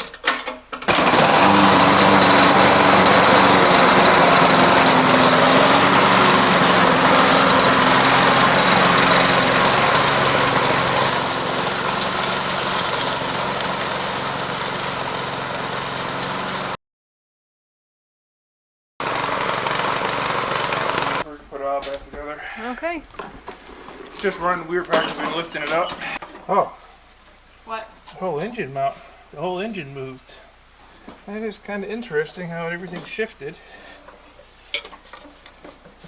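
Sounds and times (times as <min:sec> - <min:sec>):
lawn mower engine running: 0:00.0 - 0:16.8, 0:19.0 - 0:21.3.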